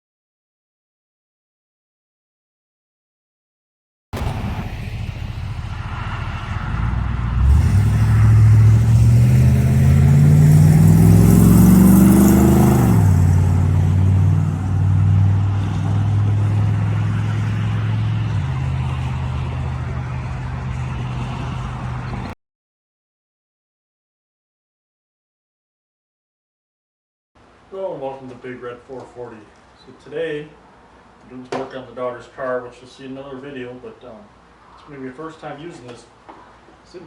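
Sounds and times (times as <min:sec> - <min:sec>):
car engine revving and idling: 0:04.2 - 0:22.4.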